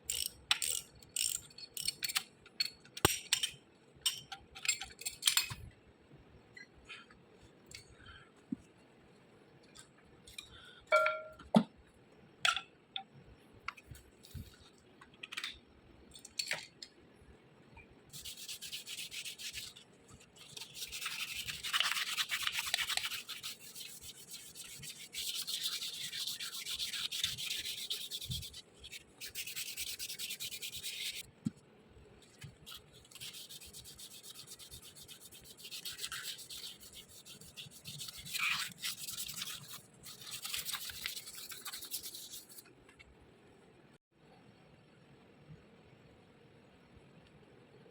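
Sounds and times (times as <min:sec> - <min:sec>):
small metal parts clicking: 0:00.0 - 0:05.6
hand scrubbing: 0:20.4 - 0:31.2, 0:32.6 - 0:42.6.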